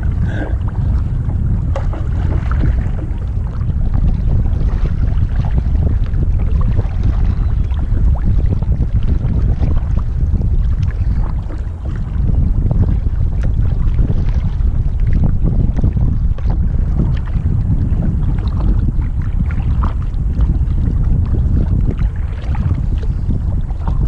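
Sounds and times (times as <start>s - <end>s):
wind buffeting microphone: 0.0s - 24.0s
river water splashing: 1.7s - 5.8s.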